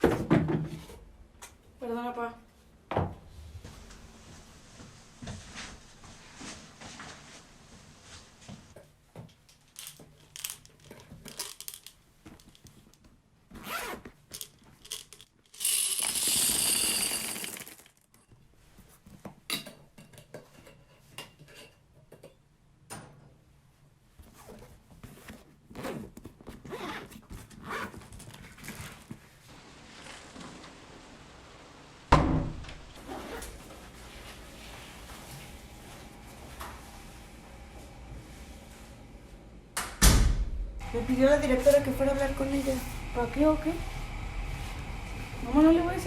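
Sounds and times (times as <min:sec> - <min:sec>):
handling rustles and knocks: 0:02.9 - 0:16.3.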